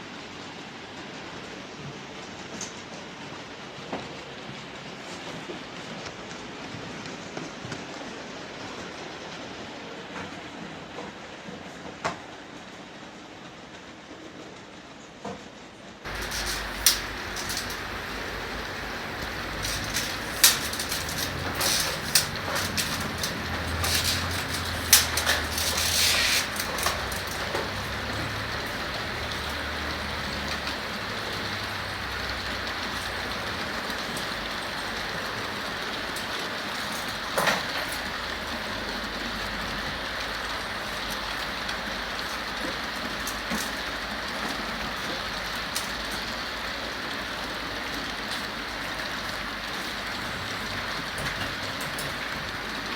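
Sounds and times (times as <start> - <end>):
freight train rumbling: 16.1 - 52.9
train clanks and knocks: 16.1 - 52.9.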